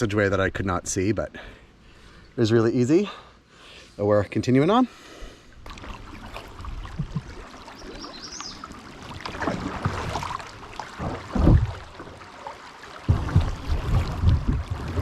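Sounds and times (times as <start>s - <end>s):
paddle strokes splashing: 5.6s - 15.0s
low thump: 11.0s - 11.9s, 13.1s - 15.0s.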